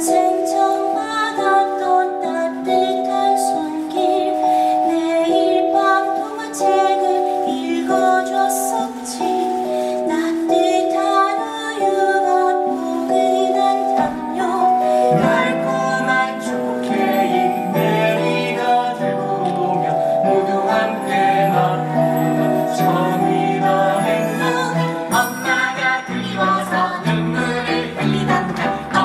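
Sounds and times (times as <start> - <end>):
held instrumental chords: 0.0 - 29.0
bell-like tinkling: 14.5 - 27.2.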